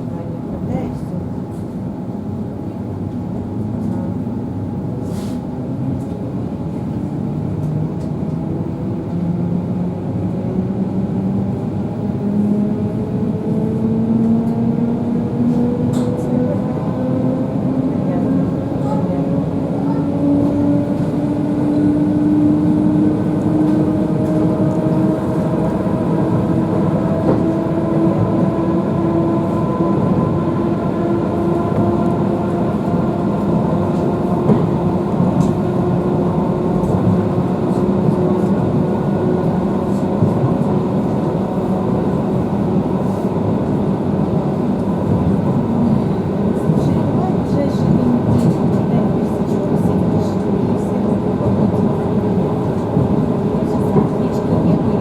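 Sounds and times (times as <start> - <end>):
train wheels rumbling on track: 0.0 - 55.0.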